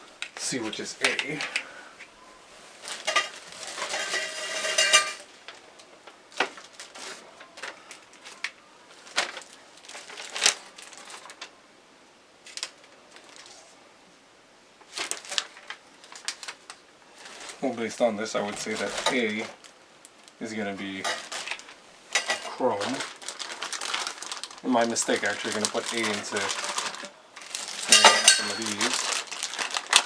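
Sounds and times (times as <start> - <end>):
metal bars clattering: 3.0 - 5.3, 21.0 - 22.6, 27.8 - 28.9
clinks and knocks: 3.1 - 5.2, 27.8 - 28.9.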